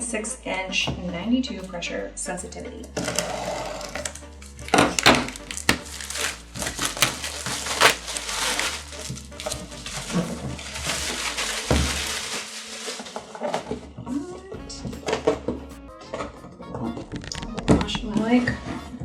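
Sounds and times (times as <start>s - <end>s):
clicks and knocks: 3.0s - 8.7s
packaging crinkling and rustling: 3.0s - 13.8s.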